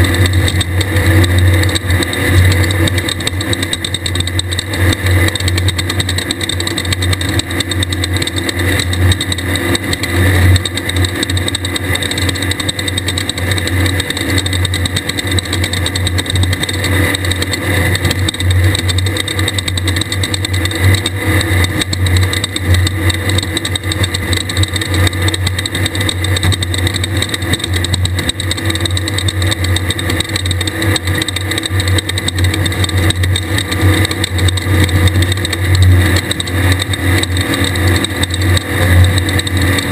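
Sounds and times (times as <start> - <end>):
buggy engine running hard: 0.0 - 39.9.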